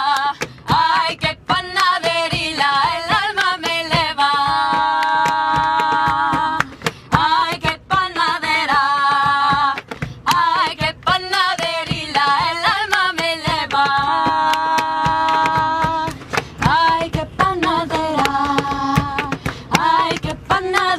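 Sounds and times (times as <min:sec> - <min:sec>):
hand claps: 0:00.0 - 0:20.9
woman singing folk song: 0:00.0 - 0:20.9.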